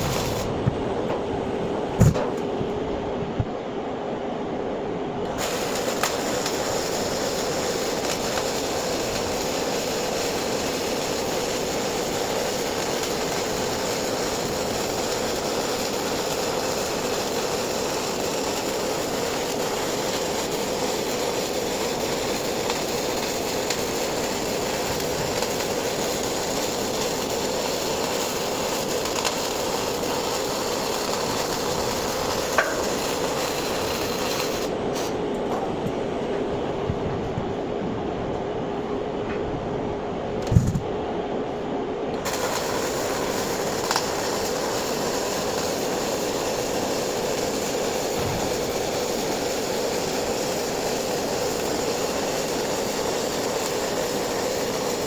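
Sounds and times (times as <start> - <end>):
welding arc: 0.0 - 1.2, 5.3 - 35.3, 42.2 - 55.0.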